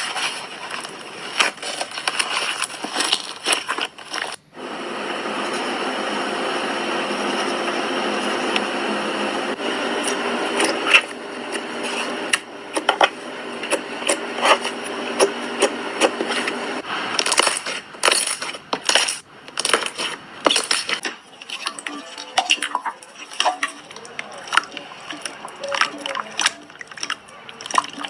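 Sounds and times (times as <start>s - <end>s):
steady hum: 4.5s - 16.8s.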